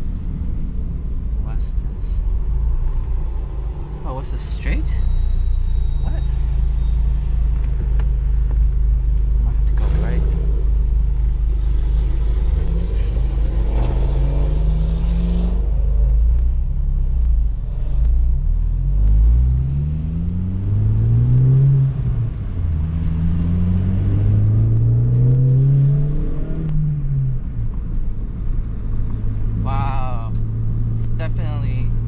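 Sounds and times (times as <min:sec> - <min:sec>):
car engine accelerating through gears: 0:02.1 - 0:29.6.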